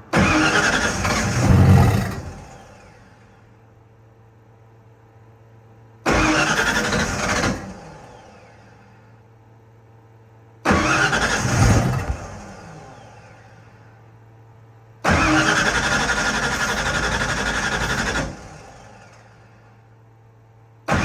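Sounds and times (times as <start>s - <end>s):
engine starter cranking: 0.1s - 2.9s, 6.1s - 8.2s, 10.7s - 12.7s, 15.0s - 19.0s.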